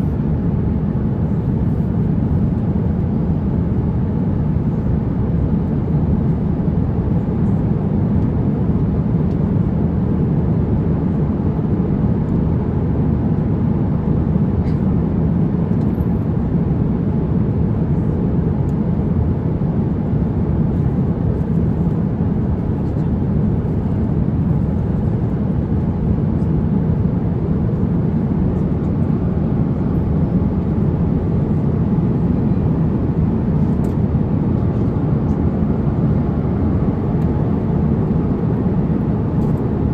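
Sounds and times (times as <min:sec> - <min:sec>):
airliner cabin noise in flight: 0:00.0 - 0:39.9.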